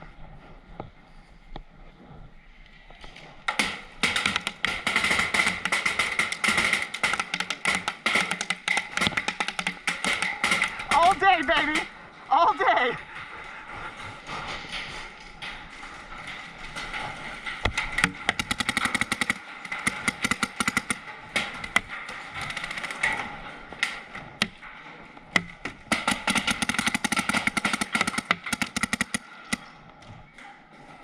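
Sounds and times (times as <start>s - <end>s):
paintball markers firing: 3.5s - 11.8s, 18.0s - 23.1s, 25.4s - 29.7s.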